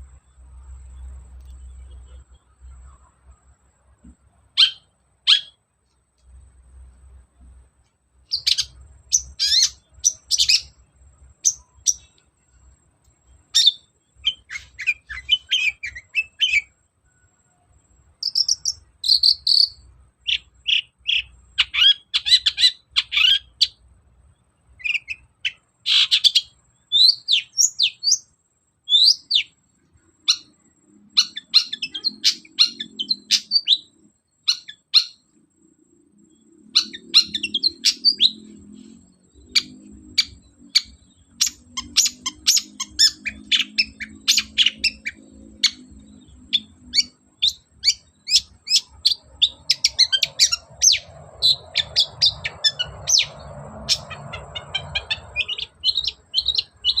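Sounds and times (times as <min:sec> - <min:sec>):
bird singing chirps and whistles: 0:04.6 - 0:05.6, 0:08.3 - 0:10.8, 0:13.5 - 0:16.8, 0:18.2 - 0:23.8, 0:24.8 - 0:29.6, 0:30.2 - 0:35.3, 0:36.3 - 0:38.6, 0:39.4 - 0:57.0.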